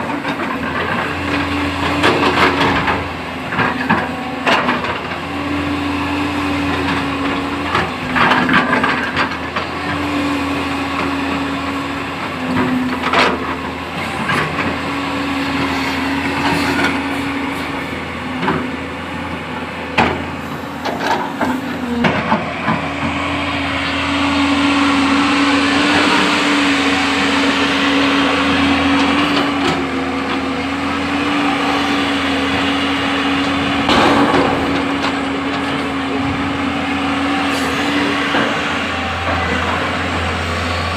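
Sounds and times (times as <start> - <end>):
diesel engine running: 0.0 - 40.9
loud rushing noise: 14.0 - 40.9
sharp knocks and clanks: 33.4 - 36.4.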